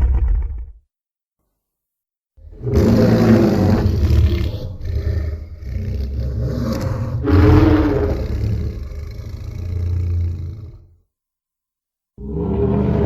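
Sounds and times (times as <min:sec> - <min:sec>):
giant ape growling and roaring: 0:00.0 - 0:00.8, 0:02.4 - 0:10.9, 0:12.2 - 0:13.0.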